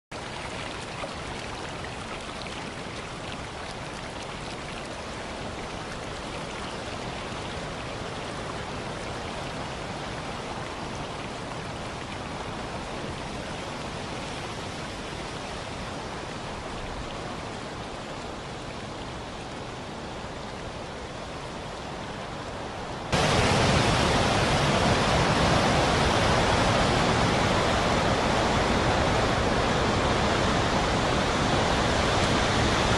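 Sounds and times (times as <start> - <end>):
waterfall roaring: 0.1 - 32.9.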